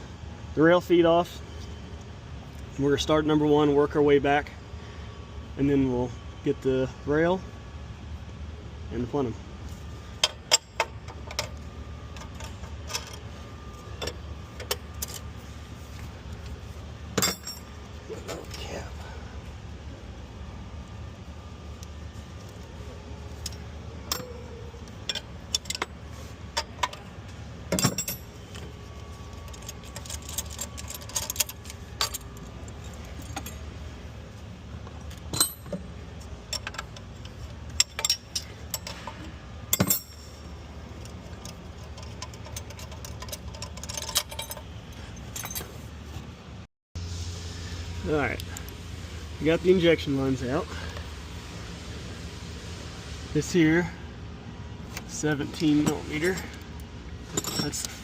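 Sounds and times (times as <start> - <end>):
steady low hum: 0.0 - 58.0
wrench and metal fittings clinking: 17.2 - 17.8, 23.4 - 27.1, 27.7 - 28.6, 29.2 - 33.7, 35.0 - 45.8, 55.0 - 58.0.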